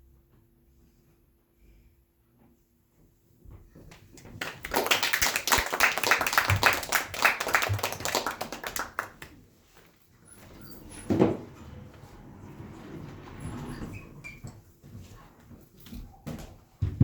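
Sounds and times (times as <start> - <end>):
audience applause: 4.4 - 9.3.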